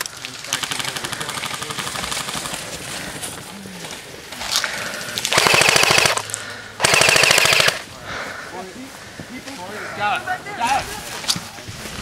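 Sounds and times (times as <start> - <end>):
airsoft gun automatic bursts: 0.5 - 2.6, 5.3 - 7.8.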